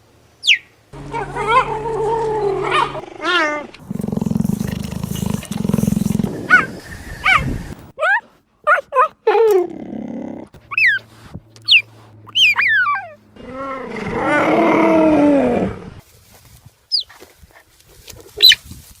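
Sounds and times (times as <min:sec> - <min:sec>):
big cat calling: 0:01.0 - 0:07.5, 0:09.2 - 0:16.0.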